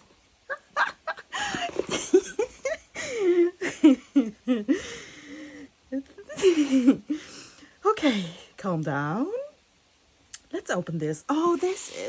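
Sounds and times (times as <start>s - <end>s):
woman breathing heavily: 1.3s - 2.0s, 2.6s - 3.7s, 4.7s - 5.8s, 6.5s - 8.6s.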